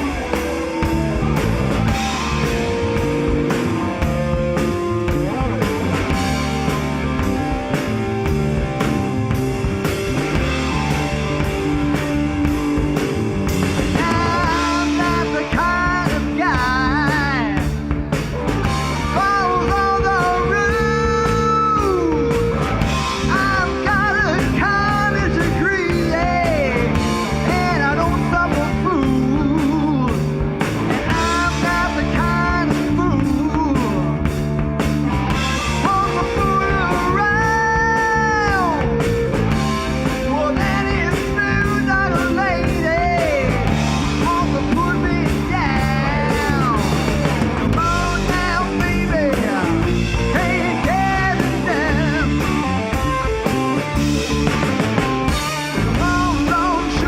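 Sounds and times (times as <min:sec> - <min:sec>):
drums: 0:00.0 - 0:57.0
guitar: 0:00.0 - 0:57.0
person singing: 0:11.5 - 0:18.0, 0:18.6 - 0:34.3, 0:35.4 - 0:53.3, 0:55.4 - 0:57.0.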